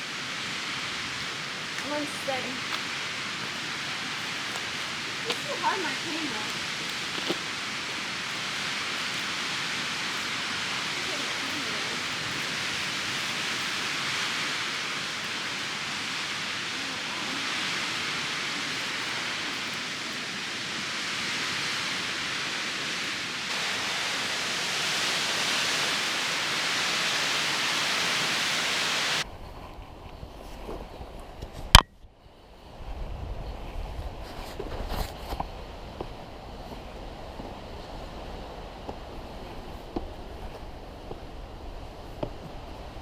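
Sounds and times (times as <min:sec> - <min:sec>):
strong wind rushing: 0:00.0 - 0:31.2.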